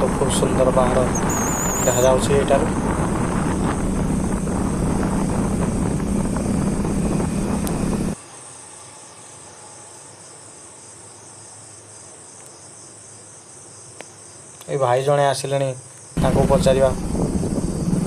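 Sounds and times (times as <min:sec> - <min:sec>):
vehicle engine hum: 0:00.0 - 0:08.2, 0:16.2 - 0:18.0
wind rush: 0:00.0 - 0:08.2, 0:16.2 - 0:18.0
insects chirring: 0:00.0 - 0:18.0.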